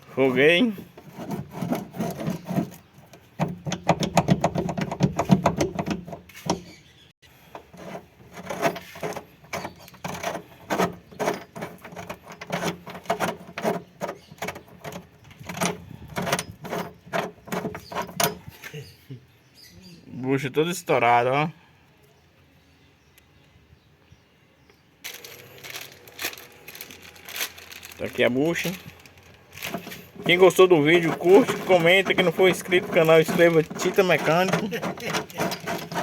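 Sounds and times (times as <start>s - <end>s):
hand tools clicking and knocking: 0.8s - 6.7s, 7.5s - 18.5s, 29.6s - 36.0s.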